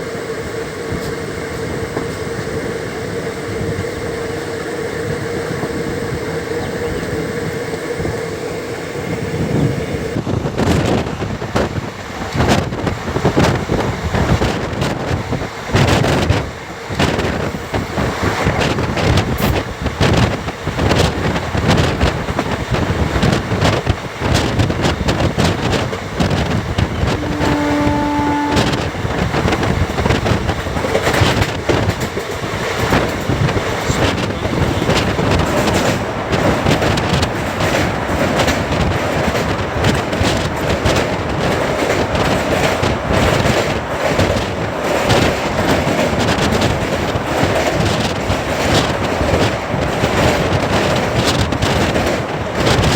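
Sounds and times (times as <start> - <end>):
train wheels rumbling on rails: 0.0 - 52.9
wind buffeting microphone: 0.1 - 52.9
horn-like tone: 26.9 - 29.3.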